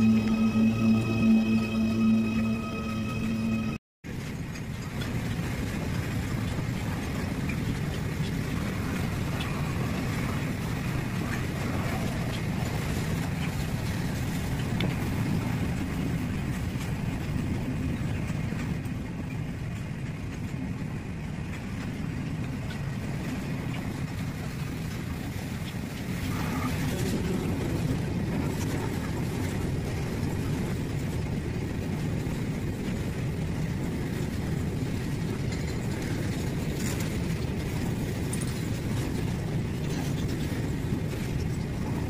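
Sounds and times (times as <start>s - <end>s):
train wheels rumbling on track: 0.0s - 42.0s.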